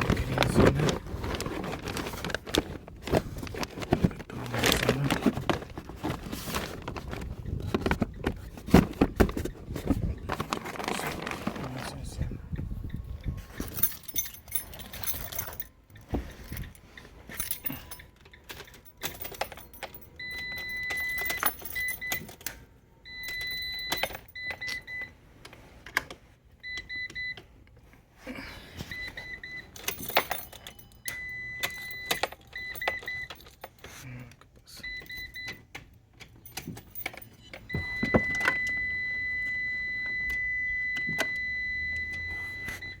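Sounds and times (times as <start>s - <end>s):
keys jangling: 13.5s - 22.5s, 29.7s - 34.0s, 36.2s - 37.5s.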